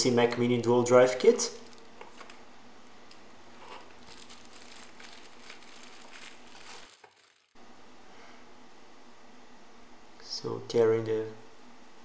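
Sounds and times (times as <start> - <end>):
plastic packaging crinkling: 1.4 - 2.4, 3.6 - 7.6.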